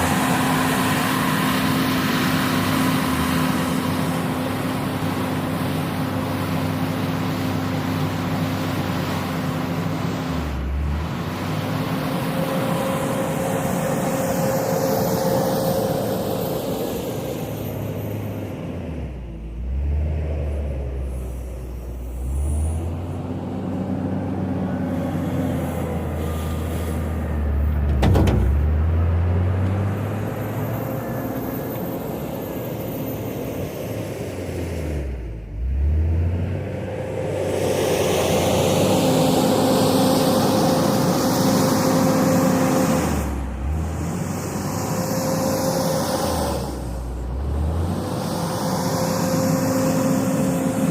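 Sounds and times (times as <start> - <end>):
diesel engine revving under load: 0.0 - 50.9.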